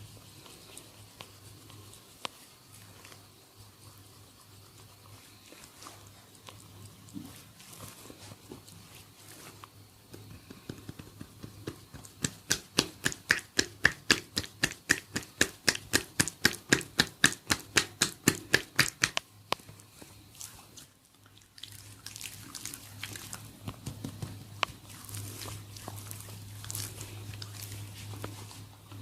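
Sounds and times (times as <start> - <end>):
hands rubbing oiled scalp: 0.0 - 20.9, 22.0 - 29.0
rapid tapping on a head: 10.1 - 19.8, 23.6 - 24.9.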